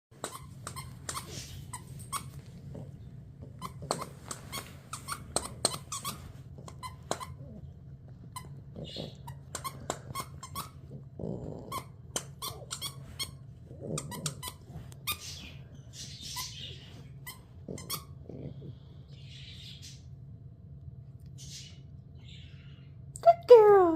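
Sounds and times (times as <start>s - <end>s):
squeaky toy squeaking: 12.2s - 13.4s.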